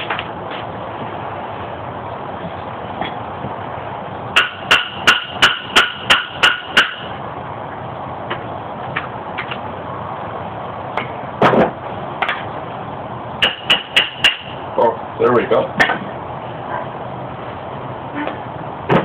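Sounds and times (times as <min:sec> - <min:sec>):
hammer striking metal: 0:04.4 - 0:07.1, 0:13.4 - 0:14.6.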